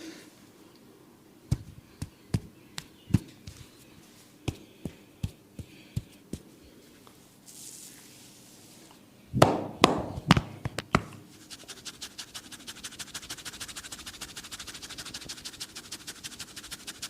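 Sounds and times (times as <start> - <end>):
soft brushing rub: 3.4 - 8.9, 11.3 - 17.0
percussive massage strikes: 9.4 - 11.2.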